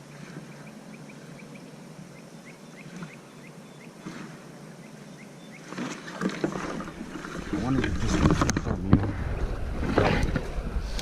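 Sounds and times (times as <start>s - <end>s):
small bird chirping: 0.5s - 4.0s.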